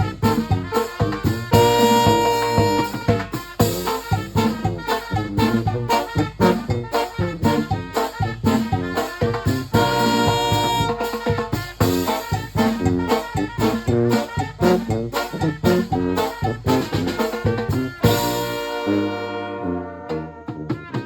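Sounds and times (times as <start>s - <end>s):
percussion beat: 0.0s - 19.4s, 20.1s - 21.0s
brass band playing: 0.0s - 21.0s.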